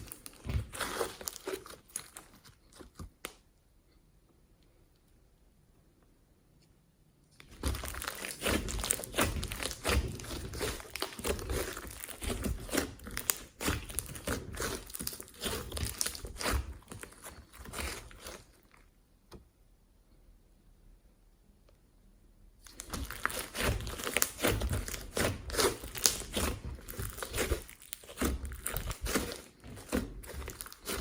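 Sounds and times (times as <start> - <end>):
slime crackling and crunching: 0.0 - 3.2, 7.4 - 18.8, 22.6 - 31.0.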